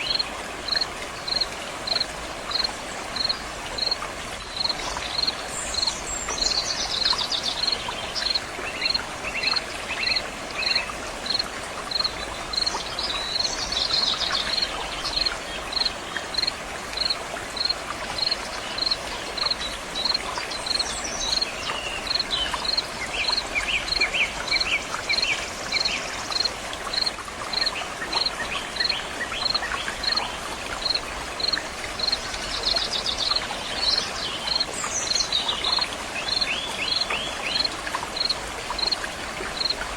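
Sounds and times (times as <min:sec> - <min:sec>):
insect chirping: 0:00.0 - 0:05.9, 0:06.5 - 0:21.5, 0:22.1 - 0:25.2, 0:25.8 - 0:39.0, 0:39.6 - 0:39.8.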